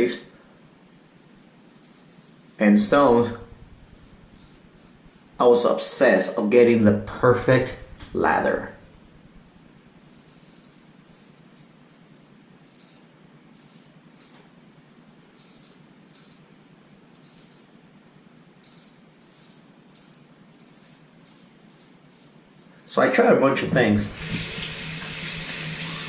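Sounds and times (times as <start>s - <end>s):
razor strokes over stubble: 3.4s - 5.4s, 18.6s - 22.7s.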